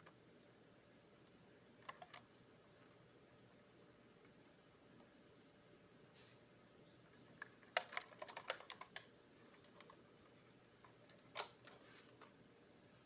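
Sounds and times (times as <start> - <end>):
mechanical keyboard clacking: 1.8 - 2.2, 7.4 - 9.1.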